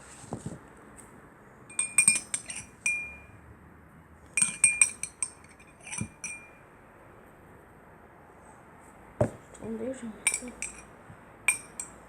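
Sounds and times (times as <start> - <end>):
spoon clinking against bowl: 1.7 - 3.3, 4.4 - 6.6, 10.2 - 10.9, 11.5 - 12.0.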